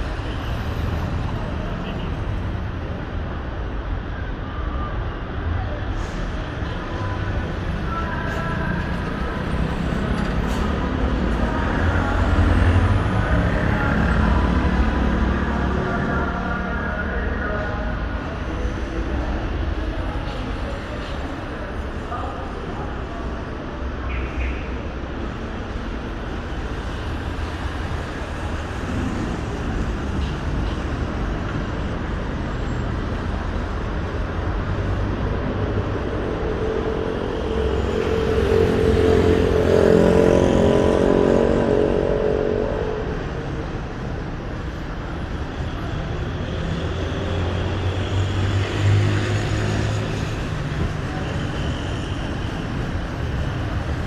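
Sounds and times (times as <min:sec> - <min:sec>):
road traffic: 0:00.0 - 0:54.0
louder vehicle engine passing: 0:34.2 - 0:44.6.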